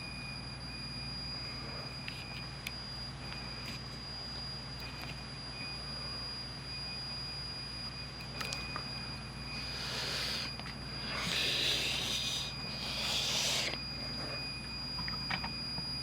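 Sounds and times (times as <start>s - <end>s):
high-pitched squeal: 9.6s - 14.4s.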